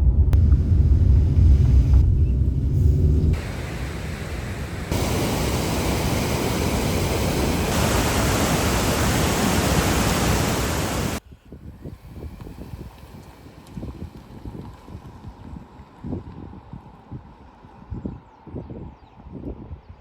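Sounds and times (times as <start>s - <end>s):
wind rumble on microphone: 0.0s - 20.0s
rushing water roar: 3.3s - 11.2s.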